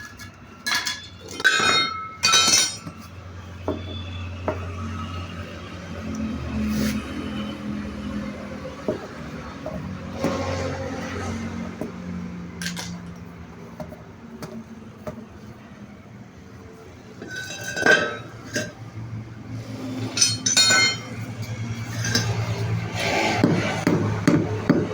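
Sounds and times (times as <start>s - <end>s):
metal tools clinking: 0.0s - 3.1s, 12.6s - 13.0s, 17.2s - 18.8s, 20.0s - 21.2s
ringing metallic clang: 0.7s - 3.0s, 20.1s - 21.2s.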